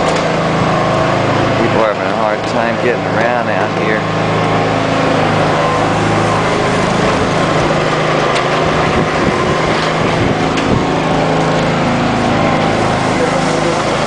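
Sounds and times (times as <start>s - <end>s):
motor engine running: 0.0s - 14.0s
loud even hiss: 12.5s - 14.0s.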